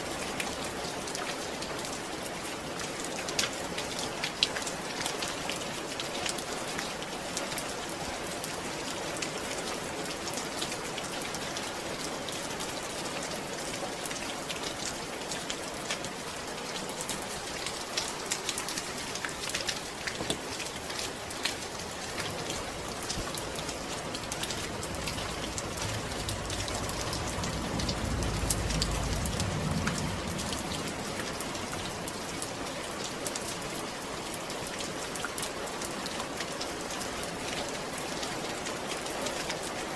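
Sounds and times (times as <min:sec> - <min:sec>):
rain pattering on surface: 0:00.0 - 0:39.9
low rumble: 0:22.3 - 0:32.4.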